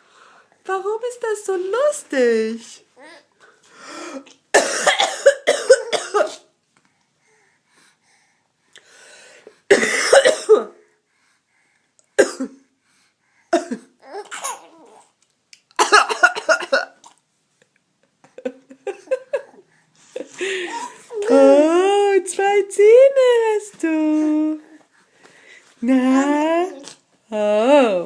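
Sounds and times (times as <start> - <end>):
woman coughing: 4.5 - 6.5, 9.7 - 10.8, 12.2 - 12.6, 13.6 - 14.6, 15.8 - 17.0
baby laughing: 14.1 - 15.1, 20.4 - 21.3.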